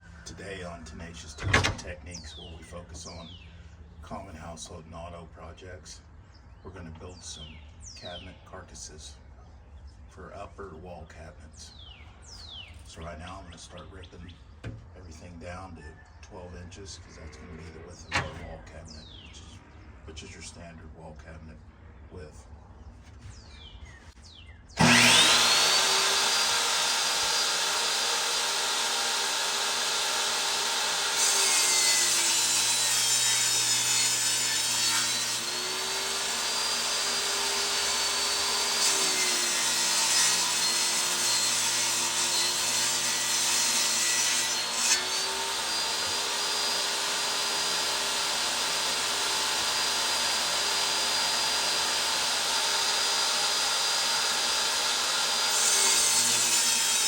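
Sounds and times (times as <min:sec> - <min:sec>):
electric saw cutting boards: 0:24.8 - 0:57.0.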